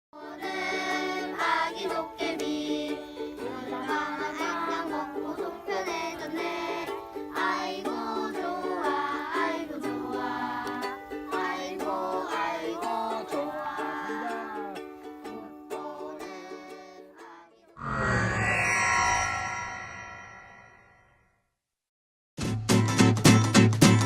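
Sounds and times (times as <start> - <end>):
person singing: 0.4 - 17.2.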